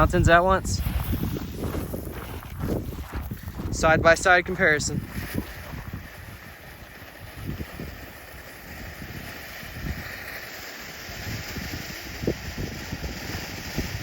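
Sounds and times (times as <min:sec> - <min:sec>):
wind buffeting microphone: 0:00.0 - 0:14.0
fountain fireworks spraying hiss: 0:03.7 - 0:14.0.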